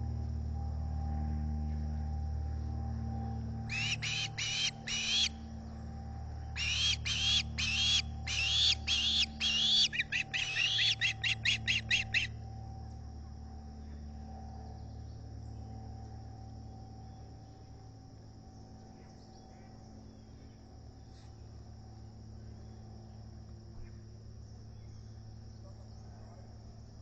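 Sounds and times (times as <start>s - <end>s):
osprey high whistling calls: 3.7s - 5.4s, 6.6s - 12.3s.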